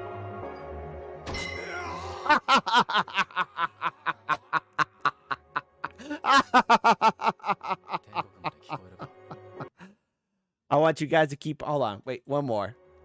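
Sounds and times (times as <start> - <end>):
person laughing: 1.6 - 9.8.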